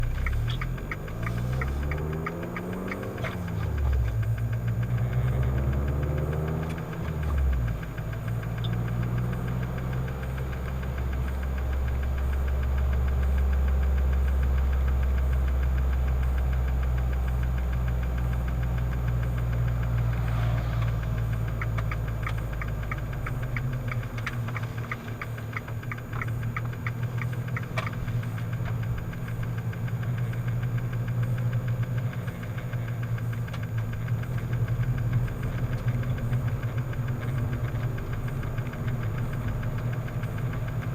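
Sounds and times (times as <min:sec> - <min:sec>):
deep low hum: 0:00.0 - 0:15.6, 0:17.1 - 0:32.0
car engine running: 0:00.0 - 0:40.9
even ticking: 0:00.0 - 0:40.9.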